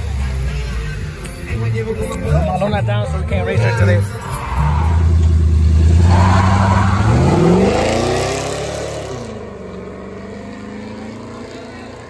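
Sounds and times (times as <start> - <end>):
vehicle engine accelerating hard: 3.4 - 12.0.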